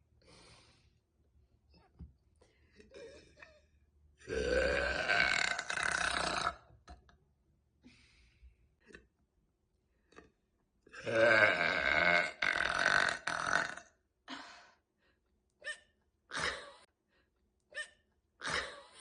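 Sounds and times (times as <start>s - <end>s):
woman burping: 4.2s - 6.7s, 15.7s - 16.9s, 17.8s - 19.0s
hiccups: 17.7s - 19.0s.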